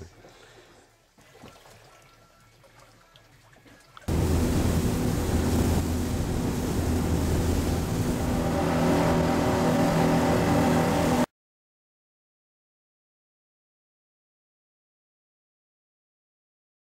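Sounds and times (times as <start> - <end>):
boat engine running: 4.1 - 11.3
rush of wind and water: 4.1 - 11.3.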